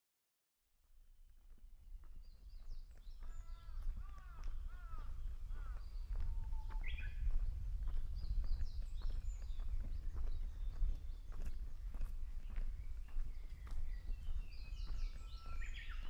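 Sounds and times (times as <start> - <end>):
other birds calling: 3.3 - 6.2
bush warbler whistling song: 5.8 - 11.6, 12.4 - 16.0.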